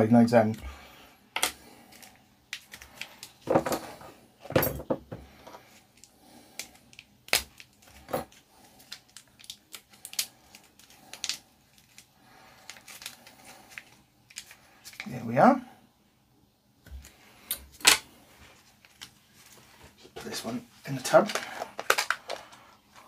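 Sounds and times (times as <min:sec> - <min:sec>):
plastic packaging rustling: 0:05.6 - 0:15.2, 0:16.9 - 0:23.0.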